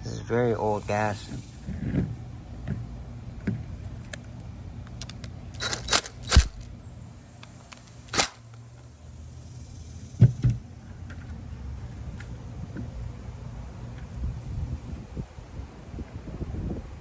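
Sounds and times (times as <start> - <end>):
clicks and knocks of tools: 4.0 - 6.7, 7.4 - 8.9.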